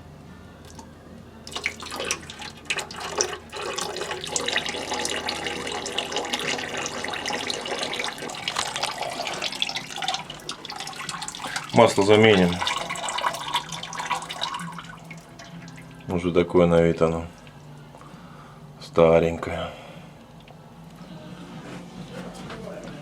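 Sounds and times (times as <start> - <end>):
oil running and splashing: 1.5 - 17.8.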